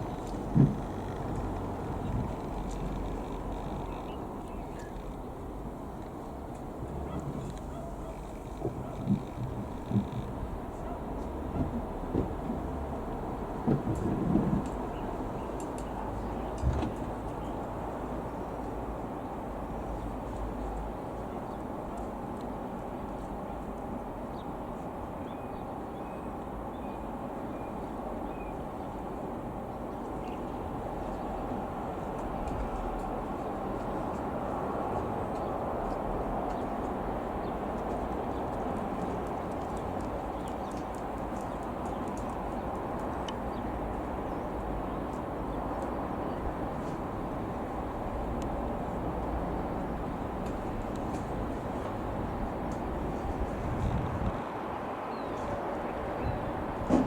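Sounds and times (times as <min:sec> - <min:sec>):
faint ticks: 0:00.0 - 0:05.3
low outdoor rumble: 0:00.0 - 0:22.2, 0:29.2 - 0:54.4.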